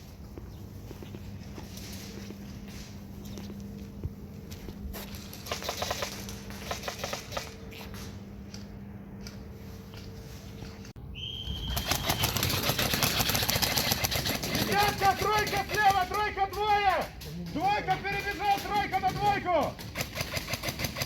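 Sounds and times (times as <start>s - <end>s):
low steady hum: 0.0s - 18.1s
airsoft guns firing: 5.5s - 7.6s, 14.4s - 21.0s.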